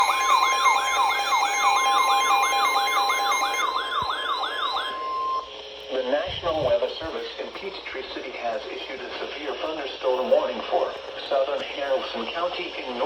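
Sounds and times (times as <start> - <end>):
warbling siren-like sweep: 0.0 - 5.5
steady high tone: 0.0 - 5.6.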